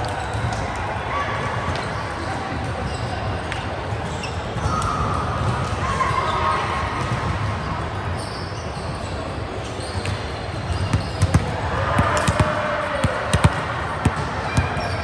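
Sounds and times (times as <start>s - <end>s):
volleyball being hit: 10.1s - 15.0s.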